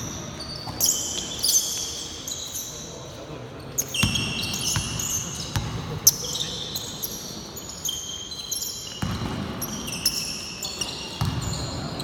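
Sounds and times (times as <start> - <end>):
sneaker squeaks on floor: 0.0 - 3.0, 3.6 - 12.0
basketball bouncing: 9.0 - 9.5, 11.2 - 11.6.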